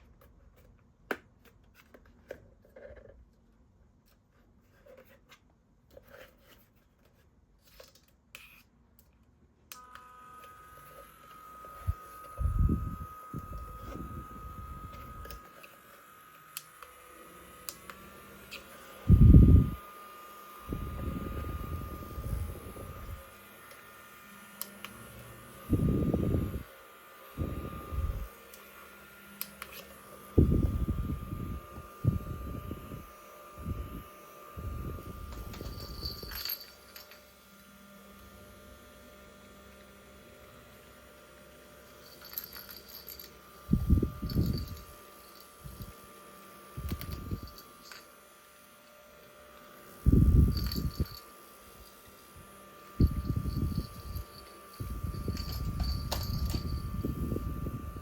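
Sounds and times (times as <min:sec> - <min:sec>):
small fan motor whining: 0:09.7 - 0:58.0
handling clicks and rustles: 0:35.3 - 0:37.3, 0:42.0 - 0:43.4, 0:44.0 - 0:45.9, 0:50.4 - 0:52.0, 0:52.9 - 0:57.0.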